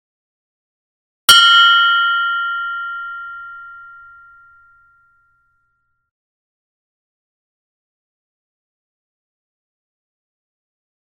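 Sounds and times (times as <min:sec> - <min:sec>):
bell ringing: 0:01.3 - 0:05.1.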